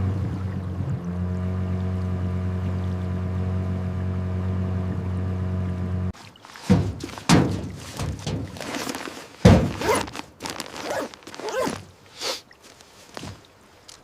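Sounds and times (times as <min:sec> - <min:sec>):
dull thuds and knocks: 0:06.5 - 0:10.6.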